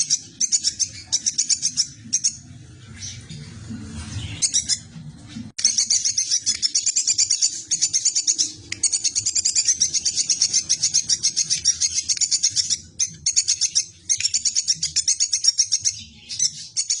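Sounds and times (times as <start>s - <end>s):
squirrel chattering: 5.6s - 17.0s.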